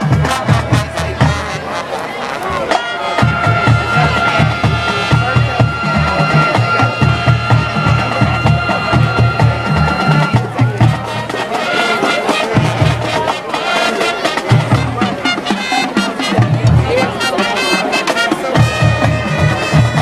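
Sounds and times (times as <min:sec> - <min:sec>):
marching band horns: 0:00.0 - 0:20.0
bass drums beating: 0:03.2 - 0:11.4.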